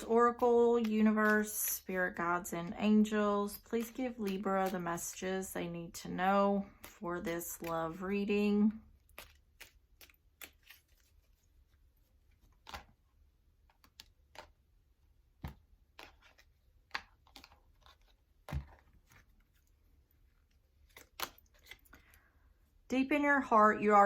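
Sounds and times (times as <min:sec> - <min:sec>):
cards being shuffled: 0:06.6 - 0:08.1, 0:08.8 - 0:14.7, 0:15.4 - 0:22.1.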